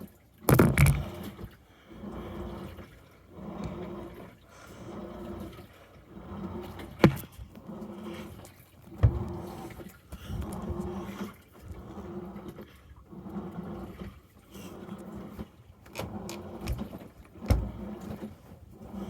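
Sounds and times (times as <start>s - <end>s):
washing machine motor humming: 0.0s - 19.0s
washing machine thuds: 9.0s - 9.4s, 17.4s - 17.9s.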